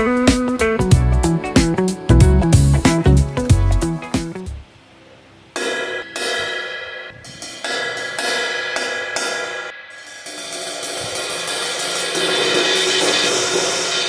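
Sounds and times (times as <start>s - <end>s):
crash cymbal struck: 5.6s - 14.0s.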